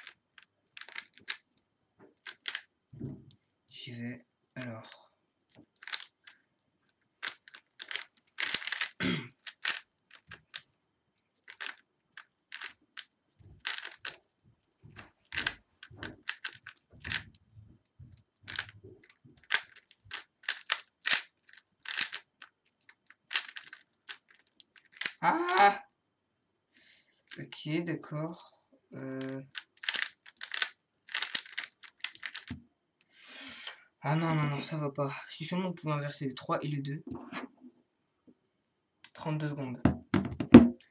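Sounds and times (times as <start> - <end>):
puzzle cube plastic clicks: 0.0 - 1.6, 2.2 - 3.6, 5.3 - 17.4, 18.1 - 25.6, 29.2 - 32.6.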